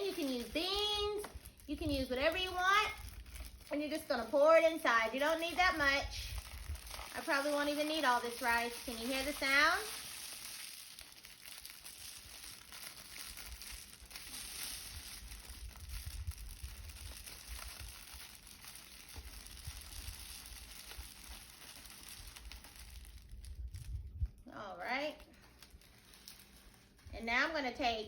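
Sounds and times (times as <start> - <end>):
rice grains pouring into shaker: 6.3 - 23.2.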